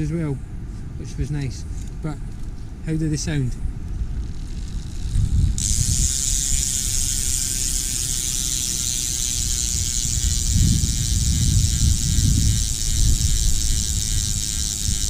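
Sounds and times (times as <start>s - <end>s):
bicycle freehub ratchet buzz: 4.2s - 15.0s.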